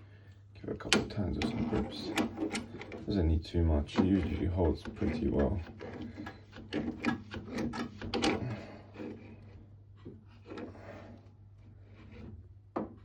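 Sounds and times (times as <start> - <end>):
metal grips clicking and scraping: 0.8 - 9.6, 10.3 - 11.2.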